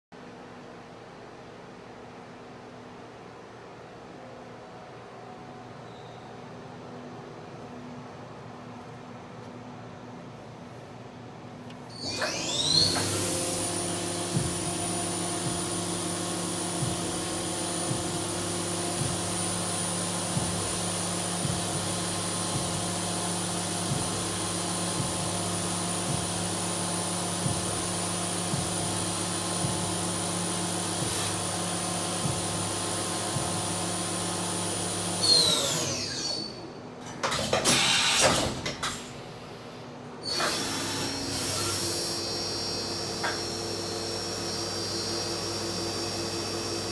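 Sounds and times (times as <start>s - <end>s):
machine spindle whine: 11.9s - 38.7s, 40.2s - 46.9s.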